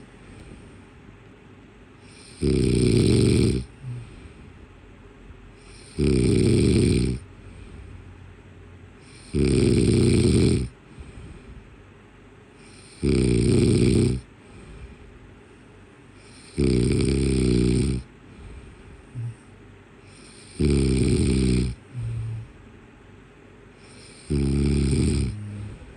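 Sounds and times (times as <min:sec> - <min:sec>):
snoring: 0:02.0 - 0:04.4, 0:05.6 - 0:07.3, 0:09.0 - 0:11.5, 0:12.6 - 0:14.9, 0:16.2 - 0:18.1, 0:19.1 - 0:22.6, 0:23.8 - 0:25.9.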